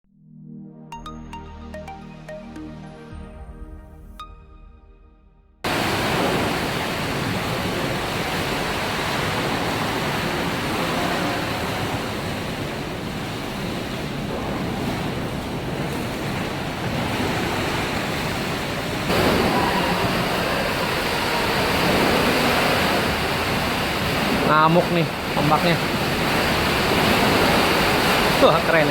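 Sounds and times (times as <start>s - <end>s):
pool water sloshing: 5.7s - 28.9s.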